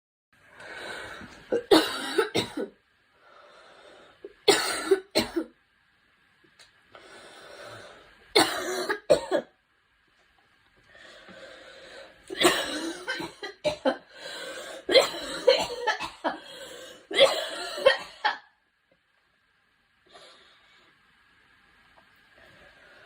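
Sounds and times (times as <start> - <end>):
drawn breath: 0.5 - 1.4, 3.2 - 4.3, 6.9 - 8.2, 10.9 - 12.3, 14.1 - 14.9, 16.4 - 17.1
woman coughing: 1.6 - 2.7, 4.5 - 5.5, 8.4 - 9.5, 12.3 - 14.0, 14.9 - 16.4, 17.1 - 18.5.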